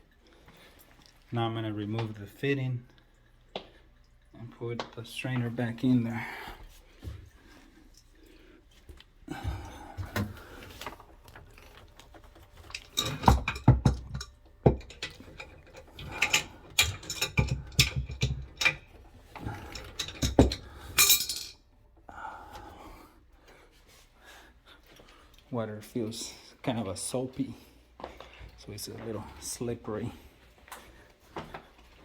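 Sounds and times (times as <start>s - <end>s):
metal clinks and rattles: 11.6s - 21.6s.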